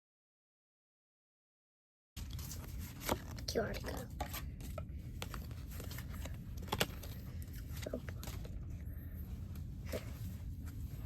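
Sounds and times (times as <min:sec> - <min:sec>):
trading cards clicking and rustling: 0:02.2 - 0:08.6
low hum: 0:02.2 - 0:11.0.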